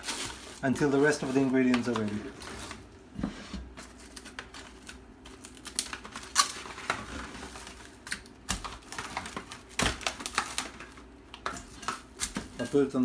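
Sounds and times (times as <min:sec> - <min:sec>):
plastic cling wrap crinkling: 0:00.0 - 0:03.1, 0:03.7 - 0:13.0
cling wrap tearing: 0:04.0 - 0:11.0.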